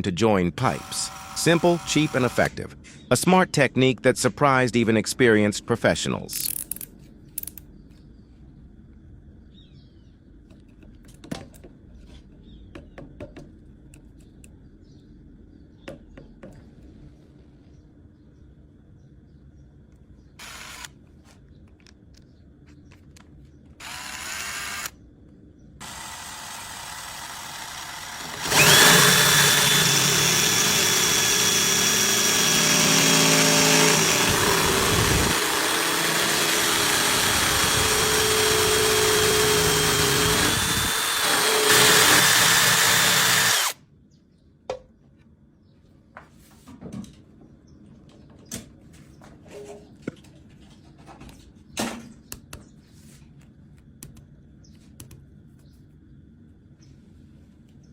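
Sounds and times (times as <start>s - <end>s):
power tool high whine: 0.6s - 2.5s, 20.4s - 20.9s, 23.8s - 24.9s, 25.8s - 43.8s.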